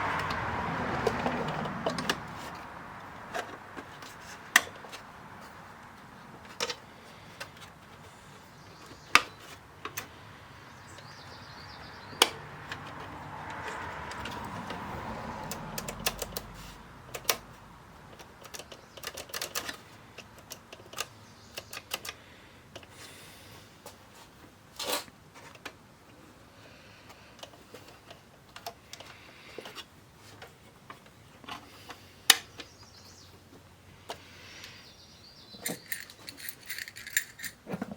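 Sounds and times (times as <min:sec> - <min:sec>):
plastic parts clicking: 0:18.1 - 0:22.9, 0:35.6 - 0:37.9.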